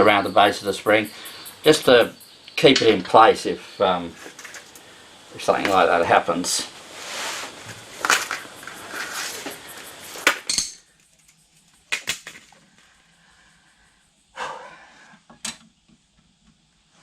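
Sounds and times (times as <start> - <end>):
metal tools scraping and rustling: 4.1 - 4.8, 7.0 - 11.7
sharp metallic clinks: 9.6 - 11.6.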